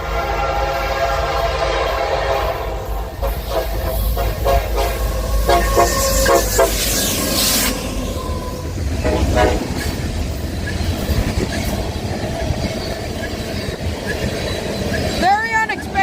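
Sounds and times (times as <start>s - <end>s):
locomotive horn blasts: 0.0s - 6.9s, 9.0s - 9.8s
freight train rumble and wheel clatter: 0.0s - 16.0s.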